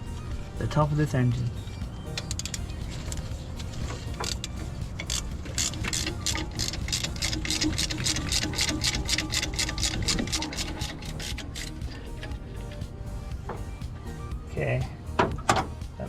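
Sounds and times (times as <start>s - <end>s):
hand ratchet clicking: 2.2s - 12.9s.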